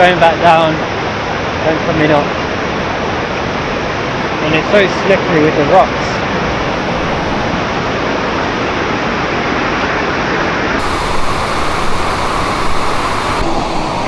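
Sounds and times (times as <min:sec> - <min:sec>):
waterfall rushing: 0:10.8 - 0:14.0.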